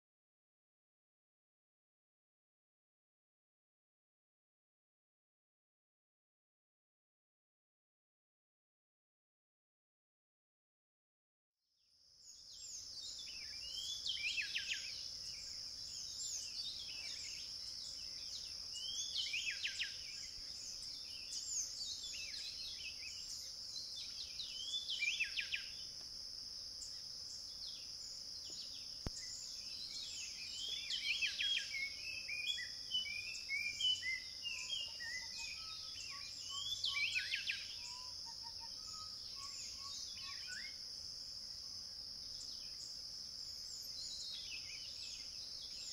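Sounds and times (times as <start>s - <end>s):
high-pitched insect drone: 12.3s - 45.9s.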